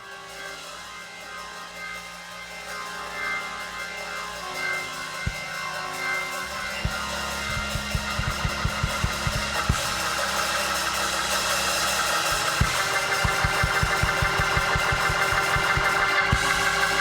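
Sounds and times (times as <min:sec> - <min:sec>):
worship music: 0:00.0 - 0:17.0
sustained low bass note: 0:06.5 - 0:10.8
low drum thumps: 0:06.7 - 0:10.2, 0:12.1 - 0:17.0.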